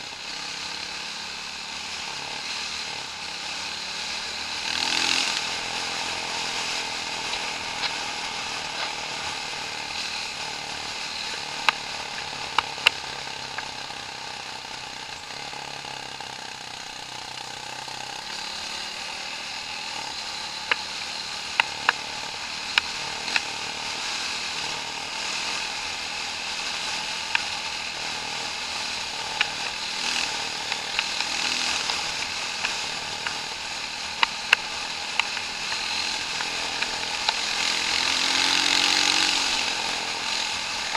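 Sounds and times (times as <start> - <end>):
vehicle engine running: 0.0 - 40.9
sharp clicks and knocks: 29.3 - 37.7.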